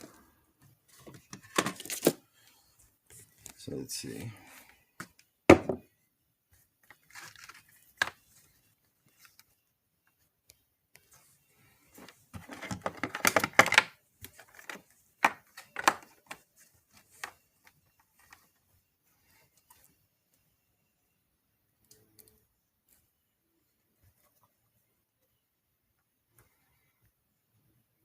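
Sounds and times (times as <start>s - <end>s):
plastic objects clicking: 12.4s - 16.4s.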